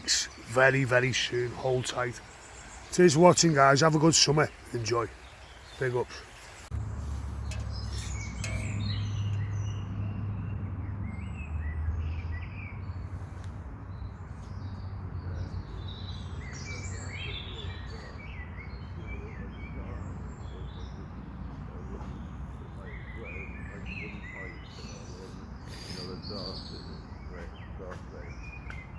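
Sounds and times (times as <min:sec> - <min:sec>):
small birds chirping: 0:00.0 - 0:28.9.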